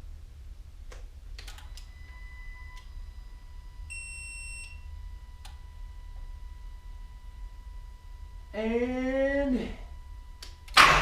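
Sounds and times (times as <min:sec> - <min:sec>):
steady beep tone: 0:01.8 - 0:08.5.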